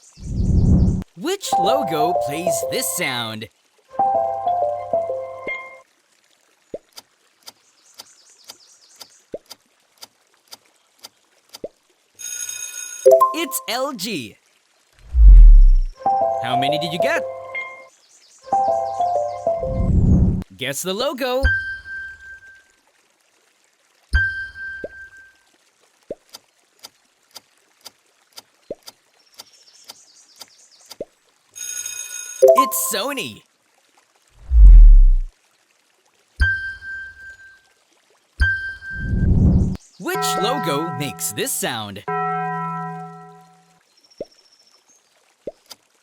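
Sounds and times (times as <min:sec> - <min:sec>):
faint high chirping: 0:13.1 - 0:13.8
rising water-drop bloops: 0:13.1 - 0:13.8, 0:15.0 - 0:16.0, 0:32.4 - 0:33.1, 0:34.4 - 0:35.3.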